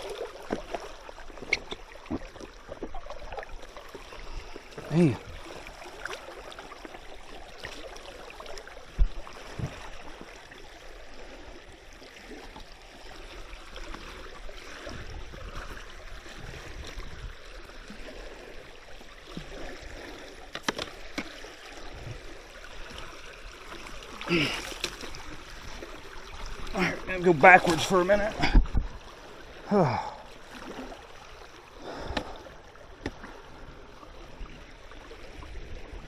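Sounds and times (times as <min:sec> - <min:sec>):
creek water running: 0:00.0 - 0:36.0.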